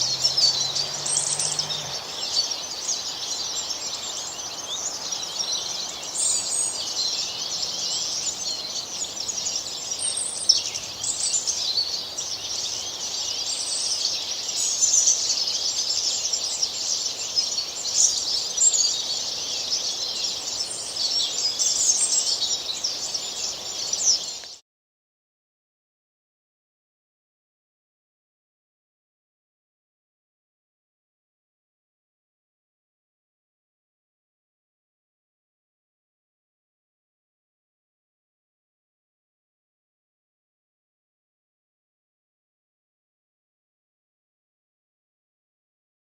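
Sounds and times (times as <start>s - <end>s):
birds chirping in chorus: 0.0s - 24.6s.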